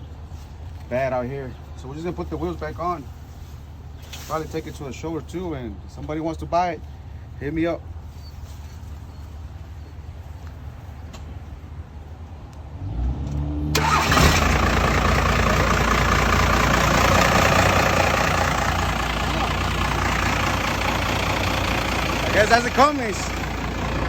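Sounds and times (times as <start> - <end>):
truck engine cranking and starting: 13.2 - 24.0
truck engine running: 13.8 - 24.0.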